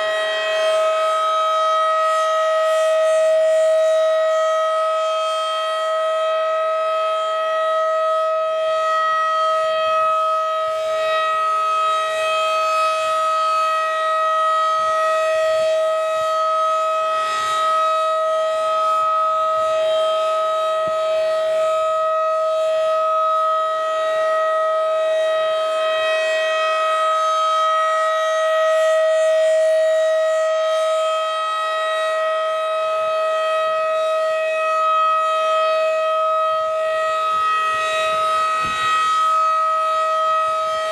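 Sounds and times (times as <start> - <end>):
tornado siren steady tone: 0.0 - 40.9.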